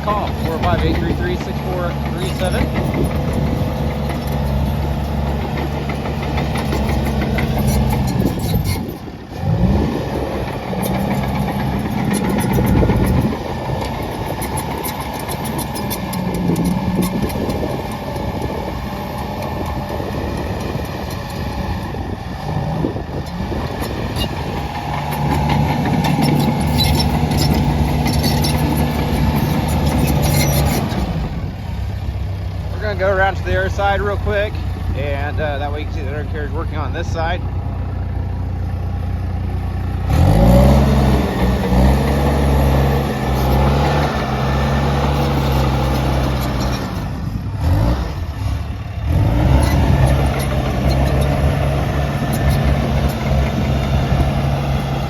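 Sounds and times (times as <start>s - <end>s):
bulldozer diesel engine working: 0.0s - 55.0s.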